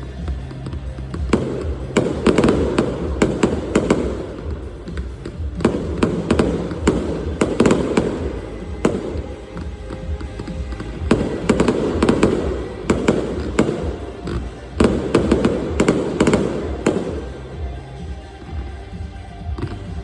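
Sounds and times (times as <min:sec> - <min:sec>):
fireworks bangs and crackles: 0:00.0 - 0:20.0
rumble of bursting shells: 0:01.1 - 0:09.4, 0:10.4 - 0:17.7.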